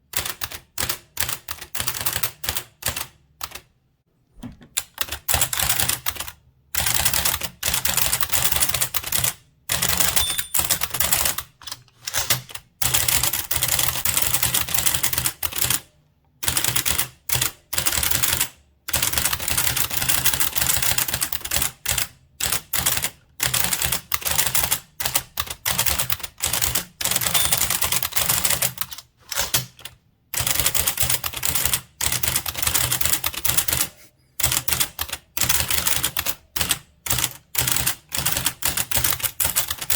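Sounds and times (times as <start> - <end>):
typewriter keystrokes clacking: 9.8 - 13.2, 22.4 - 39.9.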